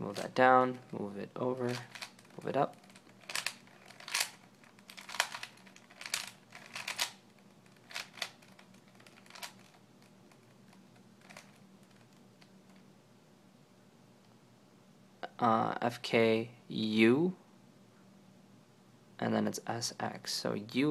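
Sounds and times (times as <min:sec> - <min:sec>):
plastic cube twisting clicks: 0:01.7 - 0:09.8.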